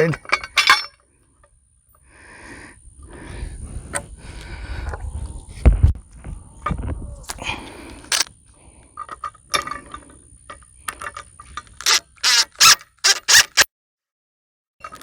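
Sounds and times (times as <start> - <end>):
ratchet wrench strokes: 11.8 - 13.7.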